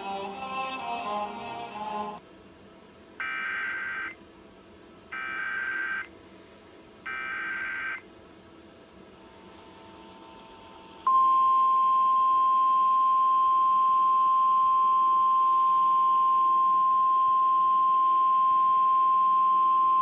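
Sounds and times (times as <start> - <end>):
steady warning alarm tone: 3.2 - 4.2, 5.1 - 6.1, 7.1 - 8.0.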